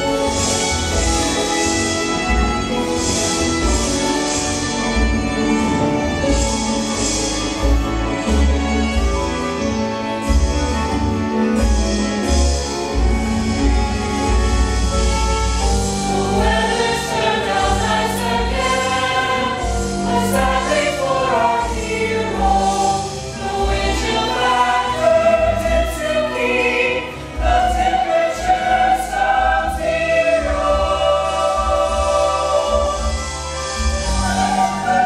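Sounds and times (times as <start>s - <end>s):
instrumental accompaniment with bass: 0.0s - 35.0s
choir singing: 15.6s - 35.0s.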